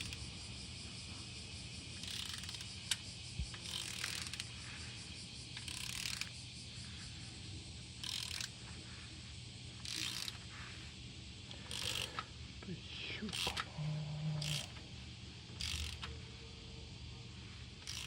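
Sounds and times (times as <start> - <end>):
ratchet wrench clicking: 0.0 - 0.4, 2.0 - 4.6, 5.5 - 6.4, 7.9 - 8.7, 9.7 - 10.5, 11.5 - 12.3, 13.3 - 13.7, 14.4 - 14.8, 15.5 - 16.2, 17.8 - 18.0
steady low hum: 0.0 - 18.0.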